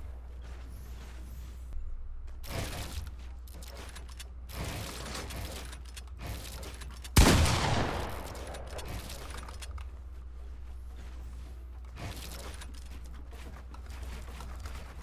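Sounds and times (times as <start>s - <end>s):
loud bang: 7.2s - 9.5s
steady low hum: 7.2s - 12.0s.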